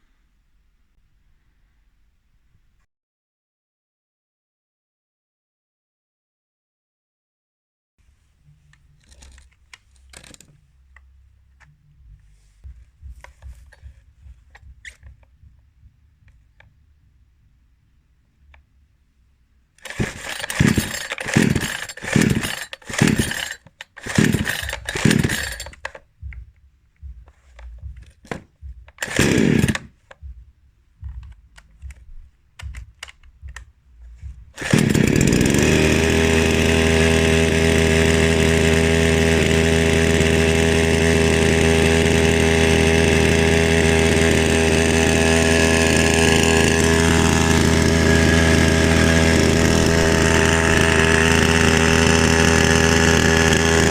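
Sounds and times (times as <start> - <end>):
chainsaw pull-start turn-overs: 8.8 - 10.5, 13.0 - 15.3, 19.8 - 26.5, 27.3 - 30.3, 31.1 - 53.9
chainsaw engine running: 9.0 - 10.5, 12.6 - 15.3, 19.8 - 30.4, 31.0 - 53.9.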